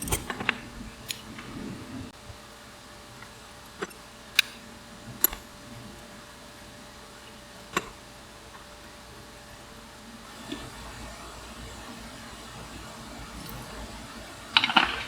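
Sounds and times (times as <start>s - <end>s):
tools and bike parts clicking: 0.0s - 1.5s, 3.2s - 4.6s.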